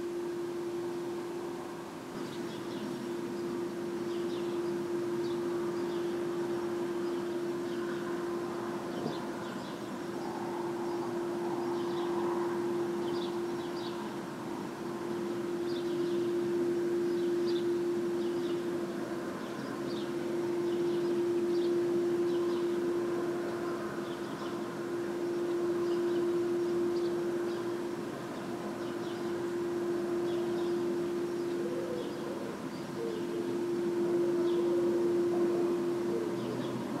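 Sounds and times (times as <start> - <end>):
steady drone: 0.0 - 37.0
faint high chirps: 14.9 - 37.0.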